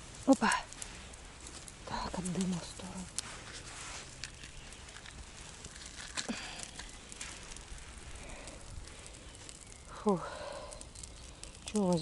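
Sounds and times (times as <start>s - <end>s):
campfire crackling: 0.0s - 12.0s
low fire hiss: 0.0s - 12.0s.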